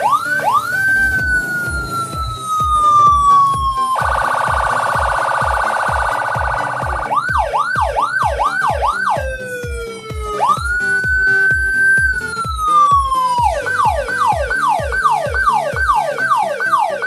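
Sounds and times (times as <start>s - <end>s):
electronic police siren: 0.0s - 17.0s
low regular thumping: 0.6s - 14.5s.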